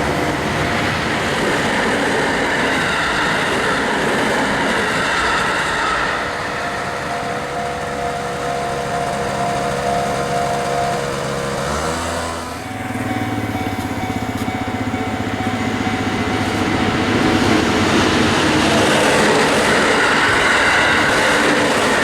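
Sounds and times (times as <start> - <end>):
electric train passing on rails: 0.0 - 22.0
steady tone: 4.9 - 11.6.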